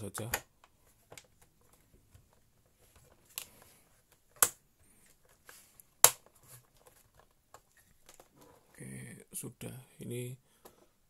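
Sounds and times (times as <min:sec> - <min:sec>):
light handling of parts: 0:00.0 - 0:08.8.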